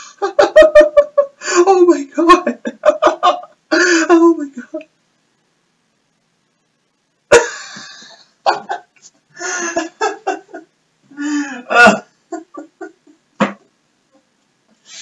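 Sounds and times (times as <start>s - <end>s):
man laughing hard: 0.0s - 1.4s, 2.6s - 3.6s, 7.3s - 13.6s.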